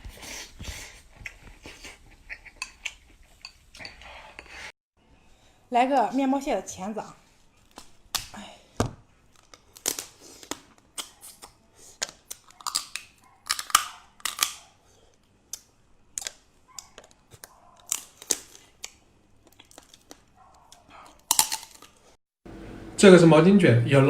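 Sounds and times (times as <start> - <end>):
wet chewing clicks: 0.6 - 4.1, 9.3 - 22.1
crab shell cracking and crunching: 9.3 - 22.2.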